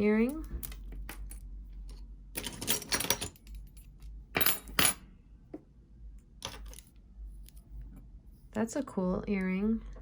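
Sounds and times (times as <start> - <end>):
metal jewelry clinking: 0.1 - 5.0.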